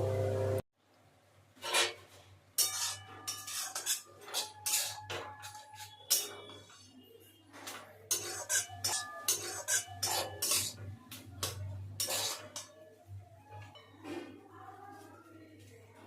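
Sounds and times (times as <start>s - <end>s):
spoon scraping and clinking in pot: 1.6s - 7.0s, 7.6s - 14.4s.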